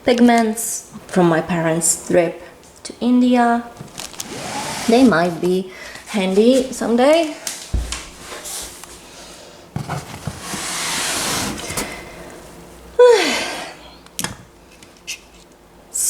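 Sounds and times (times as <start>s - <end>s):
rustling shuffle of items: 3.7s - 12.6s
knock on box: 7.7s - 8.0s.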